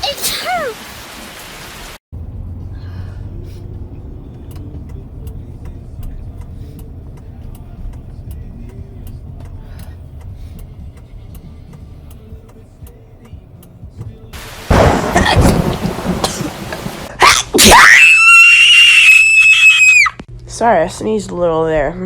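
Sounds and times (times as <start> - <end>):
car road and engine rumble: 2.1 - 17.1
faint light ticks: 4.3 - 14.3.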